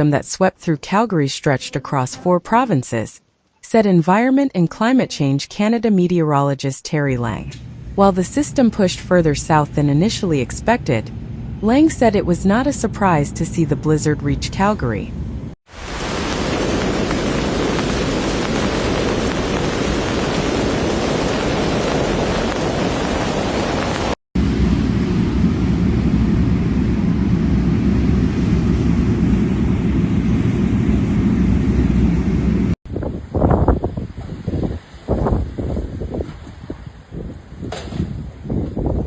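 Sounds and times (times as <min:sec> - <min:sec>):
blizzard wind blowing: 0:15.2 - 0:39.0.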